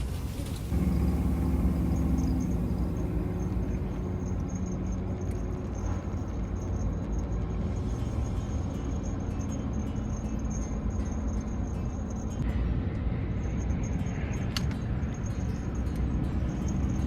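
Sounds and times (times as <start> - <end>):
high insect trill: 0.0 - 12.4
low engine rumble: 0.0 - 17.0.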